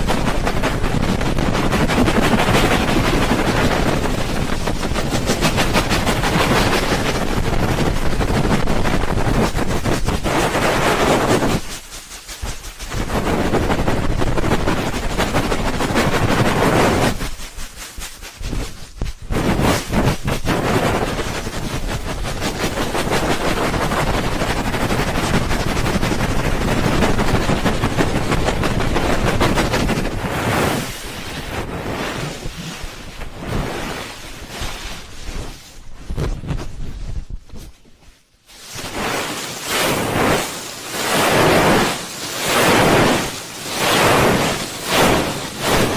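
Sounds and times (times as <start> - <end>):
hands rubbing microphone: 0.0 - 45.9.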